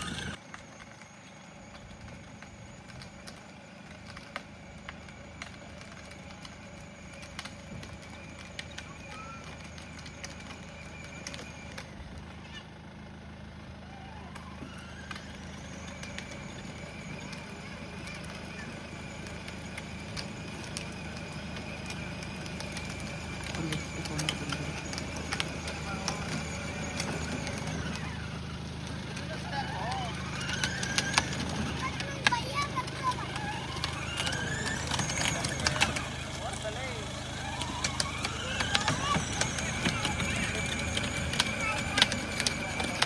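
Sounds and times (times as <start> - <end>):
electric ride-on car motor hum: 0.0 - 43.0.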